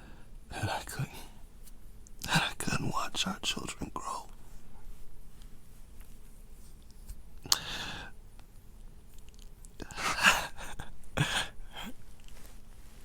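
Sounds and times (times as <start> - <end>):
man breathing heavily: 7.4 - 8.2, 9.8 - 12.5.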